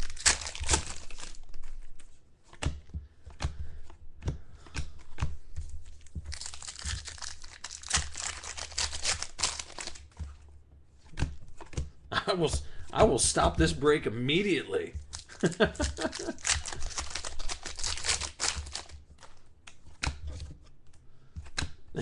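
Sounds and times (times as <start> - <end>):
wrapper tearing and crinkling: 0.0 - 2.0, 6.2 - 10.2, 15.0 - 19.4.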